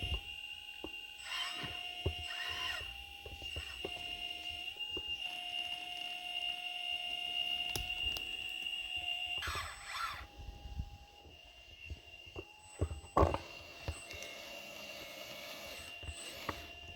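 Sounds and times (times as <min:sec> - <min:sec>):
electric motor whine: 0:00.0 - 0:16.9
short squeals: 0:09.3 - 0:10.3.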